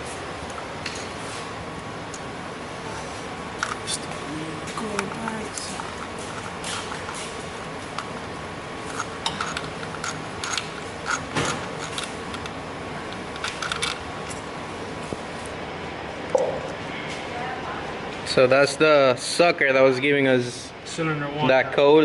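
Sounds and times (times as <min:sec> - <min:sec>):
steady background hum: 0:00.0 - 0:22.0.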